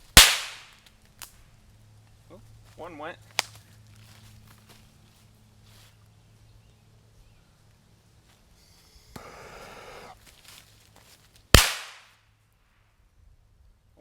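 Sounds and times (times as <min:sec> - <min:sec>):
firecracker fuse hissing: 0:08.8 - 0:10.3.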